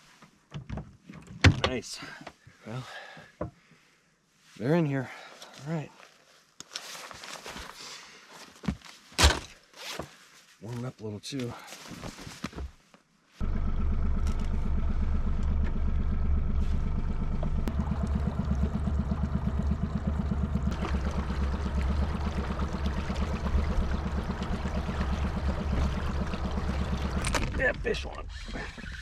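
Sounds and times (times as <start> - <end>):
boat motor running: 13.4 - 29.0.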